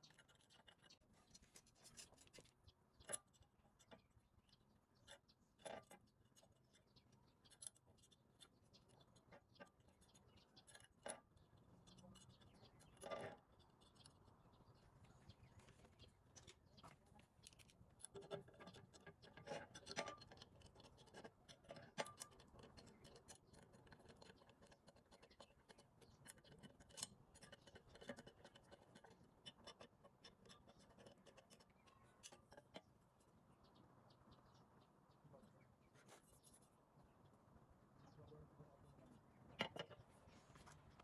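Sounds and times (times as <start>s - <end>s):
tools clicking and scraping: 0.0s - 14.4s, 16.4s - 33.0s, 39.5s - 41.0s.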